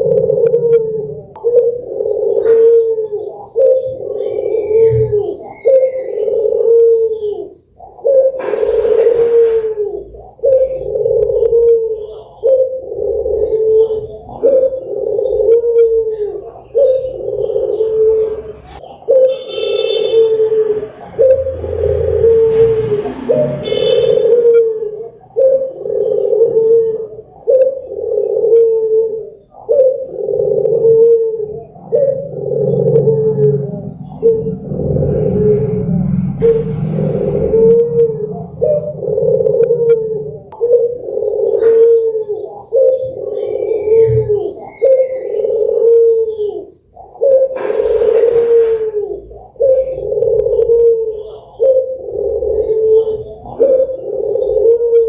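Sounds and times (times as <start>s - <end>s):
dove cooing: 0.0s - 55.0s
brief hiss: 8.4s - 9.7s
high bird call: 15.2s - 27.1s.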